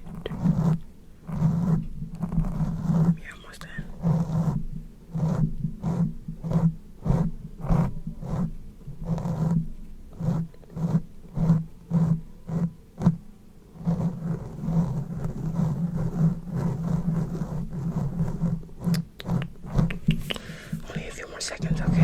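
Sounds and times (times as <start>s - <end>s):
wet mouth sounds: 18.8s - 22.0s.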